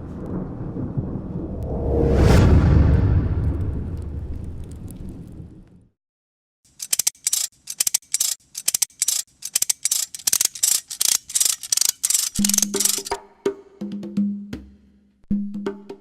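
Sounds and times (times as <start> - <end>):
low rumble: 0.0 - 5.8
rapid mechanical clicking: 6.7 - 13.1.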